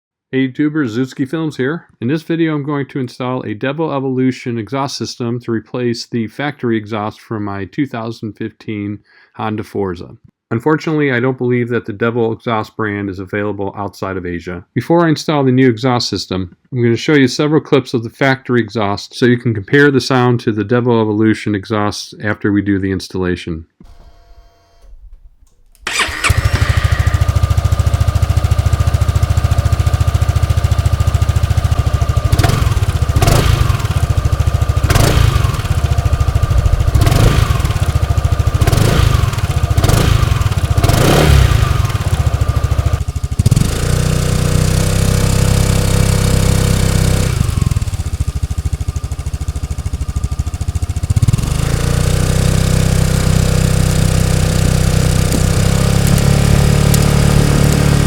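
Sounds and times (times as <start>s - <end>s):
scooter engine revving and idling: 25.9s - 58.0s.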